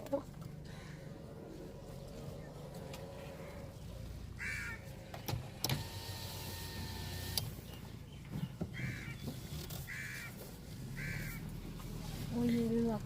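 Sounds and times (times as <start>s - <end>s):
crow cawing: 0.6s - 1.2s, 4.4s - 4.9s, 9.9s - 10.4s, 11.0s - 11.4s
mechanical whirring with click: 5.2s - 7.6s.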